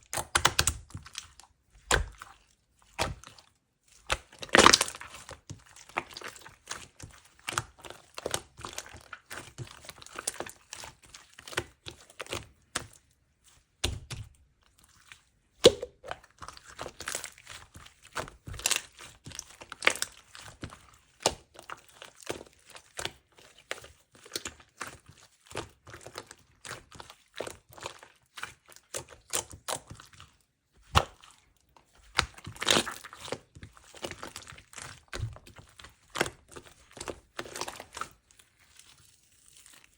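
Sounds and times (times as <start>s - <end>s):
slime crackling and popping: 4.0s - 12.6s, 32.0s - 39.9s.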